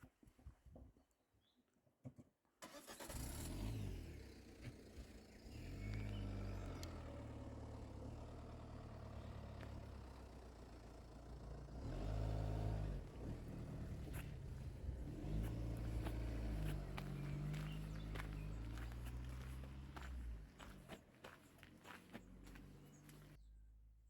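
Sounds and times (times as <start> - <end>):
vehicle engine revving: 2.8 - 23.4.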